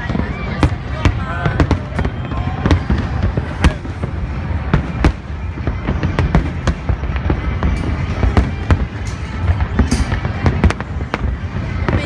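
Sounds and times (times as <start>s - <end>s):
fireworks crackling burst: 0.0s - 12.0s
fireworks sharp bangs: 0.0s - 12.0s.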